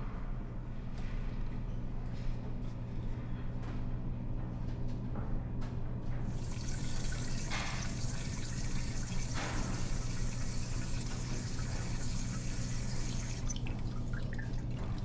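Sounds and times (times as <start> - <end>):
steady low hum: 6.2 - 14.8
tap water running into basin: 6.2 - 15.0.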